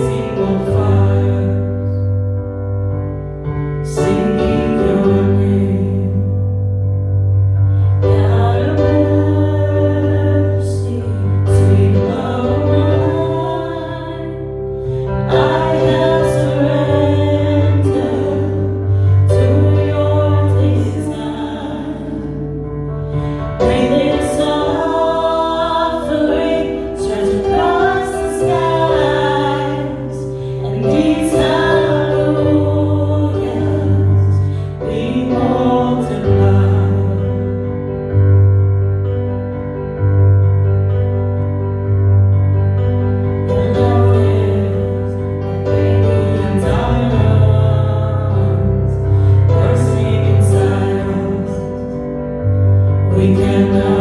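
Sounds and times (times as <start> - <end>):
praise song singing: 0.0 - 39.6, 41.4 - 54.0
instrumental accompaniment with bass: 0.0 - 54.0.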